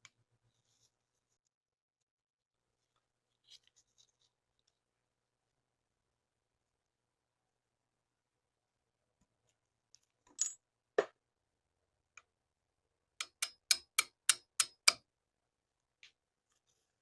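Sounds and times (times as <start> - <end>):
sharp metallic clicks: 13.2 - 15.0.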